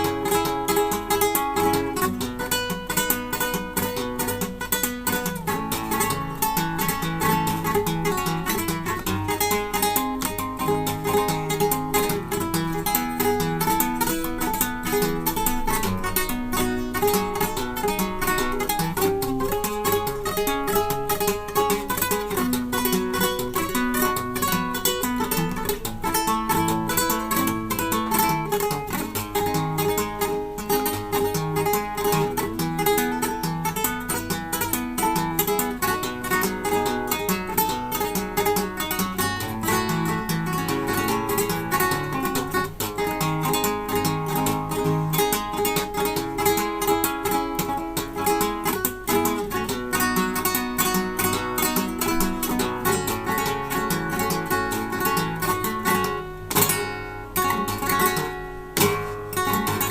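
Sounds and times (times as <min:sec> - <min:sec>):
classical guitar fingerstyle: 0:00.0 - 0:59.9.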